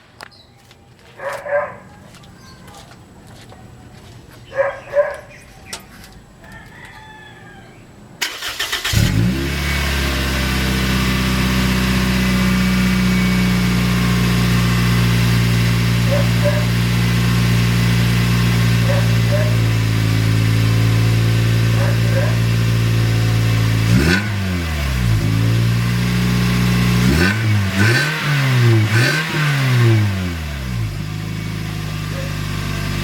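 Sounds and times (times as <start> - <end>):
car engine starting and idling: 8.2 - 33.0.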